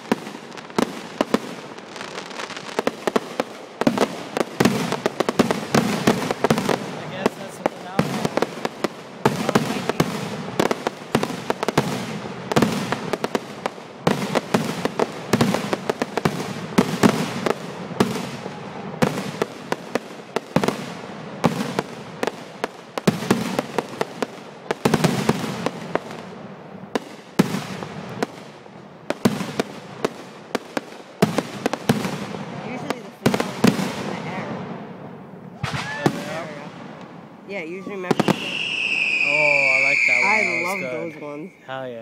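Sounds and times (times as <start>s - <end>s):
fireworks bursts and crackles: 0.0s - 41.9s
booms echoing: 31.3s - 37.4s.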